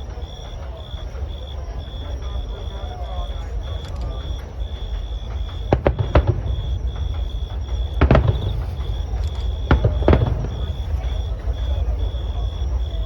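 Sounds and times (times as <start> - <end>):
fireworks bursting in sharp bangs: 3.2 - 13.0.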